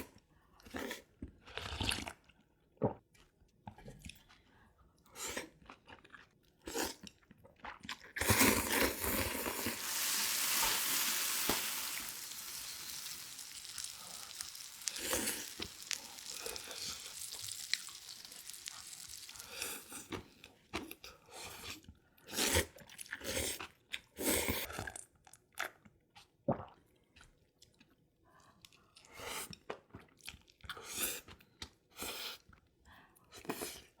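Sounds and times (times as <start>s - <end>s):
person chewing and crunching: 5.3s - 21.0s
long loud hiss: 8.8s - 20.0s.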